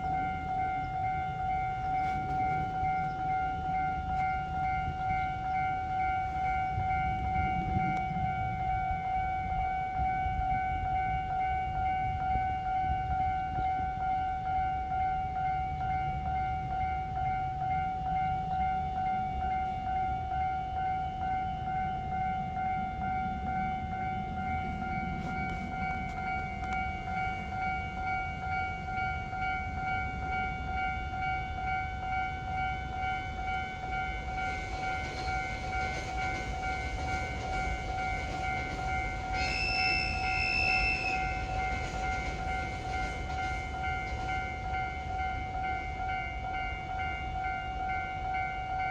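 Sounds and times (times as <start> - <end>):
train rumbling past: 0.0 - 12.0, 21.6 - 48.9
level-crossing warning bell: 0.0 - 48.9
train horn blast: 33.8 - 43.7.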